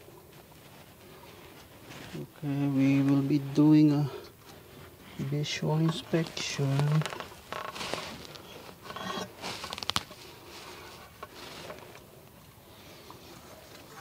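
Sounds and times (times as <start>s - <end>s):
tools scraping and tapping: 8.4s - 10.0s.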